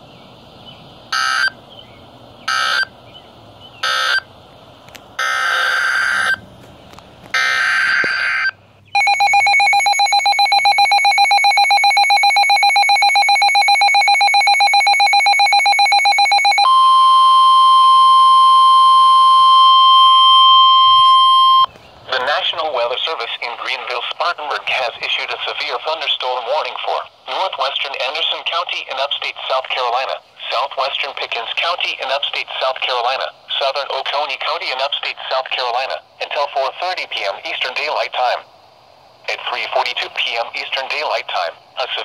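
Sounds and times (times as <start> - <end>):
digital data bursts: 7.4 - 16.6.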